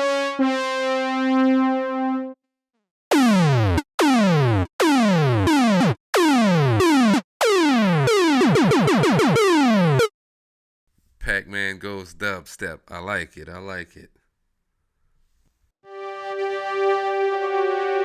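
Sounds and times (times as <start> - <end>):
synth notes sweeping downward: 3.1 - 10.1.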